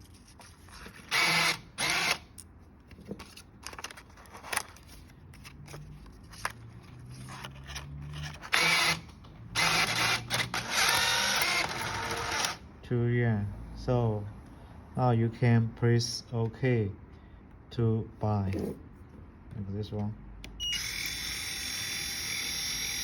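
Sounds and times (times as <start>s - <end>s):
banknote acceptor motor whirring: 1.0s - 2.3s, 8.3s - 12.6s, 20.6s - 23.0s.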